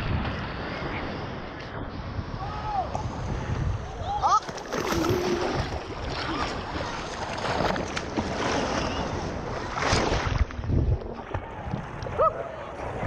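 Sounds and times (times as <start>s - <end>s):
wind on microphone: 0.0s - 13.0s.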